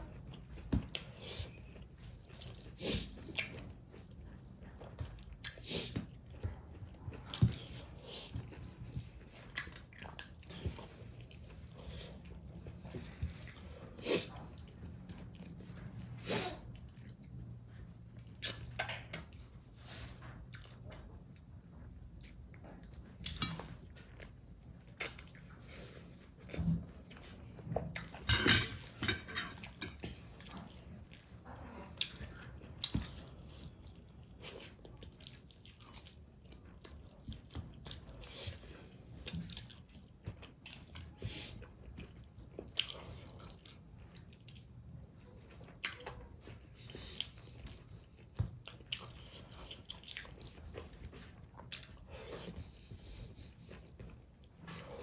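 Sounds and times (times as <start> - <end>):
wet chewing: 0.1 - 55.0
lip smacks: 18.4 - 19.4.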